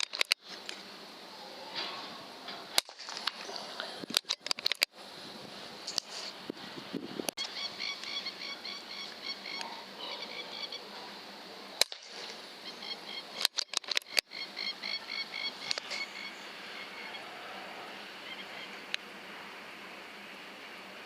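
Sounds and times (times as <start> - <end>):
sharp clicks: 0.0 - 0.8, 4.0 - 4.9, 11.8 - 12.2, 13.3 - 14.3
rhythmic animal chirping: 7.4 - 10.9, 12.5 - 17.3.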